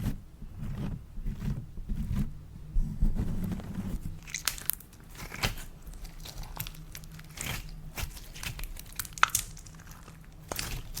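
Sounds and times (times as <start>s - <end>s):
slime squeezed sticky crackles: 4.2s - 11.0s.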